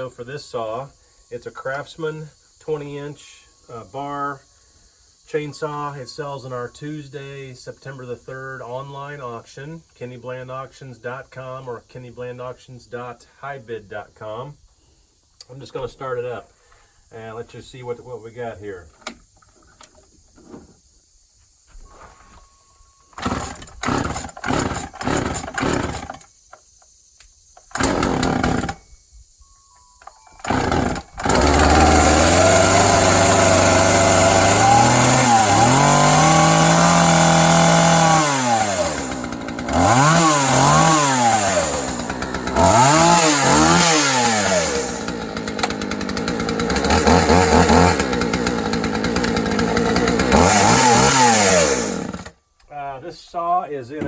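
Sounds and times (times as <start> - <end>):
chainsaw engine revving: 23.2 - 26.3, 27.6 - 28.8, 30.4 - 52.4
chainsaw starter cord pulls: 23.2 - 26.3, 27.6 - 28.8, 30.4 - 52.4.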